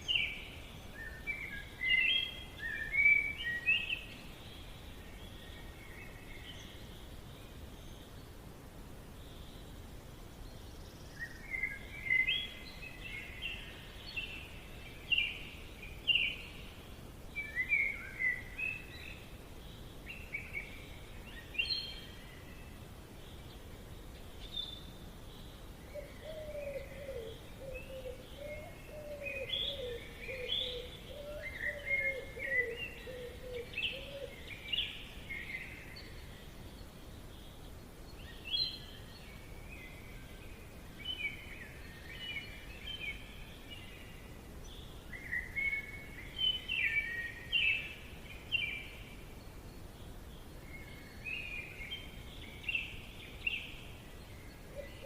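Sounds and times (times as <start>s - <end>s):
low background noise: 0.0s - 55.0s
songbirds singing: 0.0s - 55.0s.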